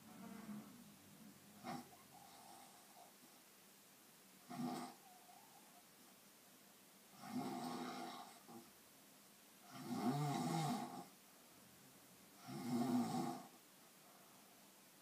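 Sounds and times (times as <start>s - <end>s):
person snoring: 7.2s - 8.6s, 9.7s - 11.1s, 12.4s - 13.6s.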